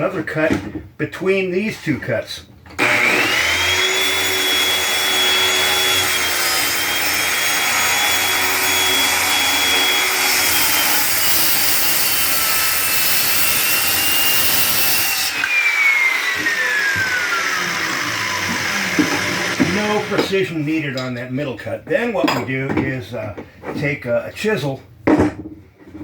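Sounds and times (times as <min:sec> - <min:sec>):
circular saw cutting a board: 0:02.8 - 0:20.4.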